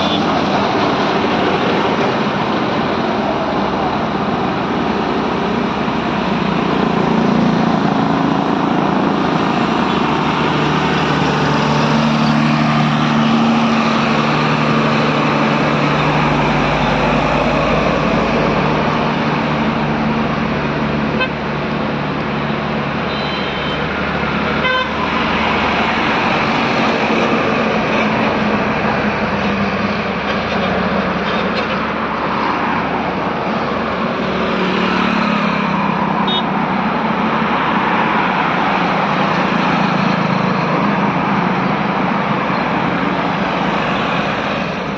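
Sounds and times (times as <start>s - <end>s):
vehicle horn: 0.0s - 0.3s, 23.1s - 24.0s, 24.6s - 25.1s, 36.2s - 36.5s
heavy truck engines: 0.0s - 44.9s.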